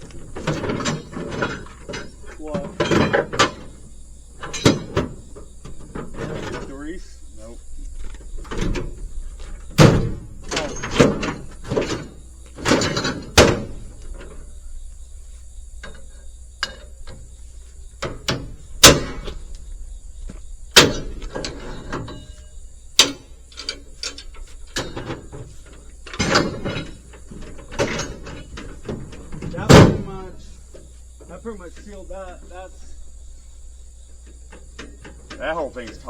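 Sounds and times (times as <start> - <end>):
chain rattling: 0.0 - 5.4, 20.8 - 29.6
loud metal knocks: 0.0 - 6.9, 8.3 - 14.6, 18.0 - 19.5, 20.7 - 30.6
metal chain binder clanking: 0.0 - 14.7, 20.8 - 30.6, 34.3 - 36.0.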